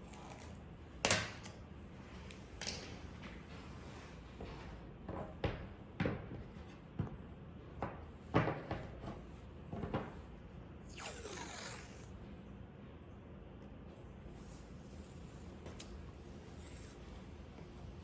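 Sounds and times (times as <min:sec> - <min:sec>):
masking tape rustling and scraping: 0:10.9 - 0:12.2, 0:14.4 - 0:17.1.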